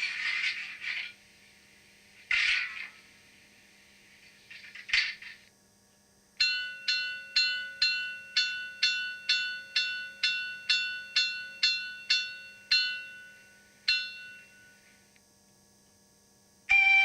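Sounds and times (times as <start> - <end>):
faint steady hum: 0.0 - 17.0
bell ringing strikes: 6.4 - 15.0.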